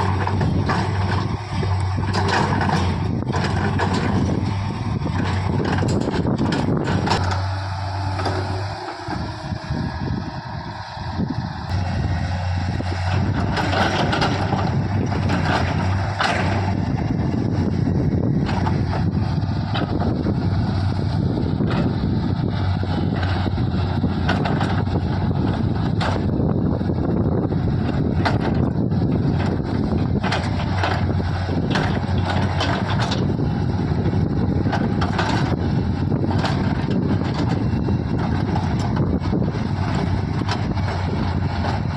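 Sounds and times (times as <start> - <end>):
short clanks and knocks: 0.0 - 4.4, 13.0 - 16.7
diesel engine humming: 0.0 - 41.9.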